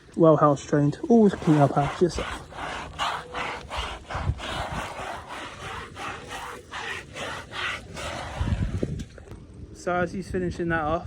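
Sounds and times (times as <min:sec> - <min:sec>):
rubbing or scrubbing strokes: 0:01.0 - 0:09.3.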